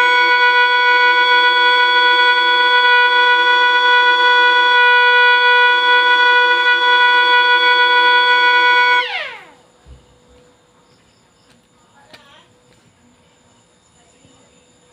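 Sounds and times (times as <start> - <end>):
vehicle horn blast: 0.0 - 9.6.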